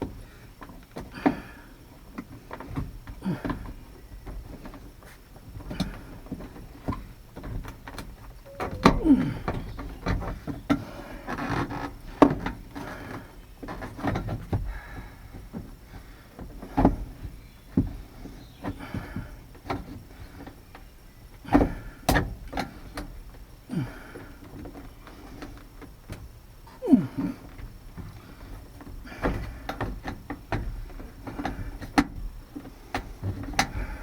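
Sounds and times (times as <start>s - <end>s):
brief falling squeak: 8.5s - 9.8s.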